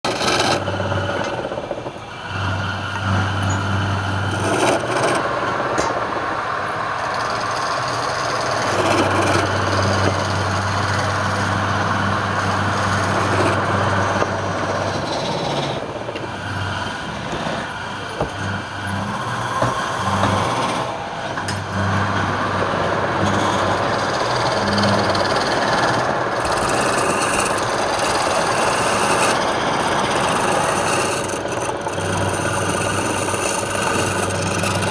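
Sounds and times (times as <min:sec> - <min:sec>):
wood lathe motor humming: 0:00.0 - 0:05.9, 0:06.9 - 0:34.9
tool cutting spinning wood: 0:00.0 - 0:34.9.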